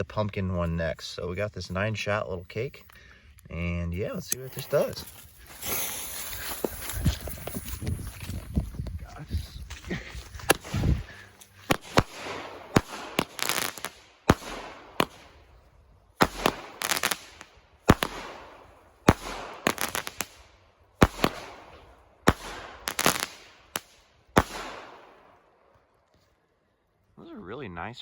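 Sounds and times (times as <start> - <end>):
crackling hiss: 0.6 - 8.5, 9.8 - 25.4
firework shots cracking: 10.4 - 25.5.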